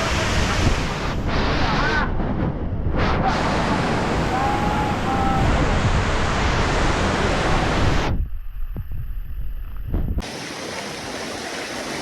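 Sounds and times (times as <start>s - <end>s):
dull low rumble: 0.0s - 10.2s
wind buffeting microphone: 0.0s - 10.2s
waterfall rushing: 10.2s - 12.0s.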